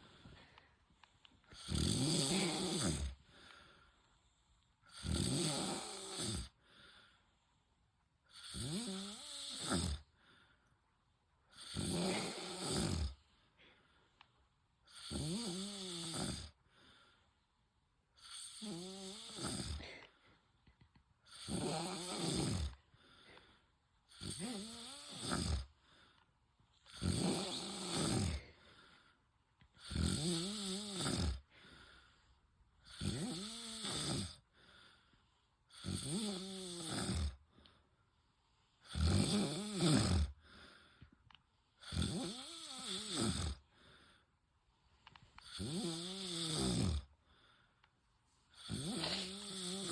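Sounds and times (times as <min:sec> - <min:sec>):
man snoring: 0:01.5 - 0:03.2, 0:04.9 - 0:06.6, 0:08.3 - 0:10.1, 0:11.5 - 0:13.2, 0:14.9 - 0:16.6, 0:18.2 - 0:20.0, 0:21.3 - 0:22.8, 0:24.1 - 0:25.8, 0:26.9 - 0:28.6, 0:29.8 - 0:31.9, 0:32.8 - 0:34.4, 0:35.7 - 0:37.4, 0:38.8 - 0:40.4, 0:41.8 - 0:43.8, 0:45.4 - 0:47.1, 0:48.5 - 0:49.9.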